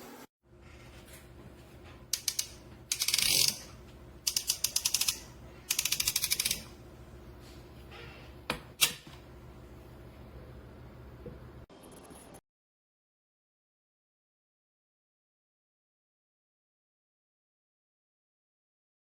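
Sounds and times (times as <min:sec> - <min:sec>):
grinder dial ratcheting clicks: 0:02.1 - 0:03.6, 0:04.2 - 0:06.6.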